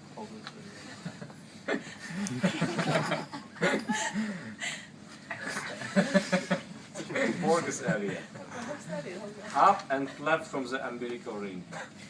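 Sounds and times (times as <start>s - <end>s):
people laughing: 0.9s - 4.5s, 5.3s - 8.8s.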